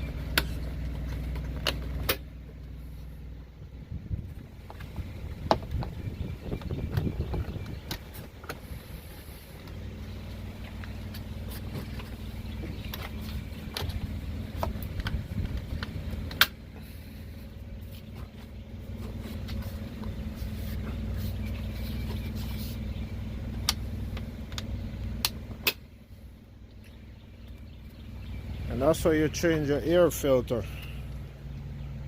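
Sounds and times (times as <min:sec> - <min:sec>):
vehicle engine idling: 0:00.0 - 0:32.0
sharp clicks and knocks: 0:23.5 - 0:25.8.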